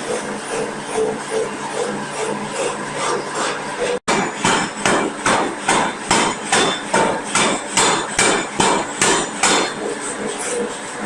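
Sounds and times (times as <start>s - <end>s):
forging hammer clanging: 4.1s - 9.9s.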